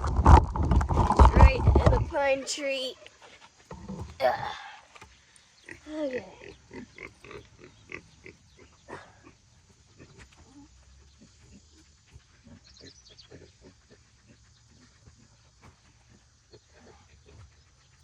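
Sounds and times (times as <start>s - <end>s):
pigs grunting: 5.6s - 18.0s.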